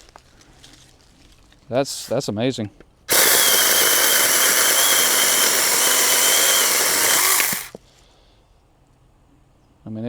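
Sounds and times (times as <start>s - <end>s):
electric chainsaw whining: 3.1s - 7.8s.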